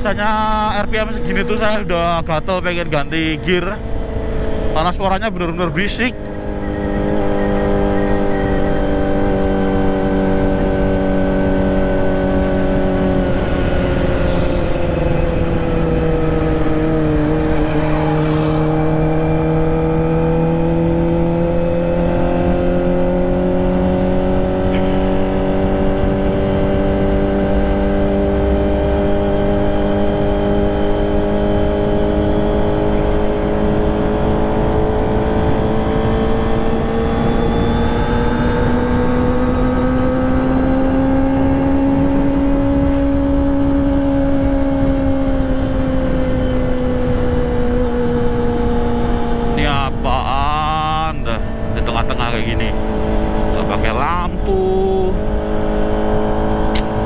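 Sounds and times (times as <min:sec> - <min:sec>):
motorcycle engine revving: 0:00.0 - 0:57.0
wind and road noise: 0:00.0 - 0:57.0.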